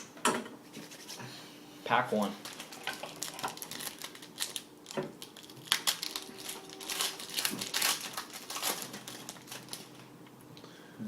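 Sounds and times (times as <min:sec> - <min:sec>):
wrapper tearing and crinkling: 0:02.4 - 0:10.1.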